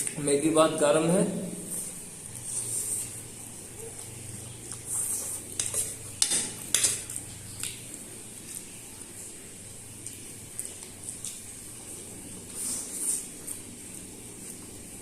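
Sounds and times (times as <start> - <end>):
cutlery clinking on a plate: 5.6 - 7.1.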